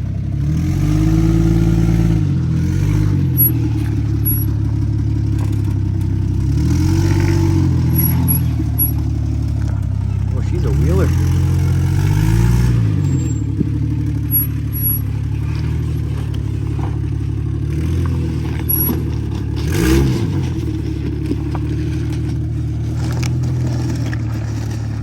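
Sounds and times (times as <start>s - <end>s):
car engine revving: 0.0s - 25.0s
knocks and scrapes: 7.0s - 10.3s, 12.5s - 25.0s.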